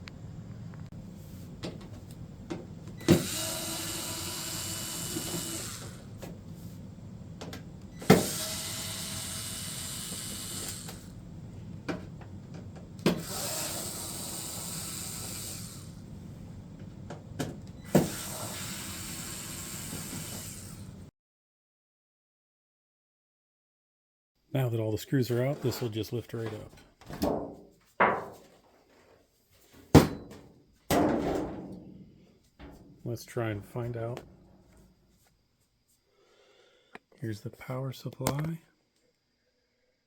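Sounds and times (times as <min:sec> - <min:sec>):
cordless drill backing out screws: 0:03.0 - 0:06.4, 0:08.0 - 0:11.2, 0:12.7 - 0:15.9, 0:17.4 - 0:20.9.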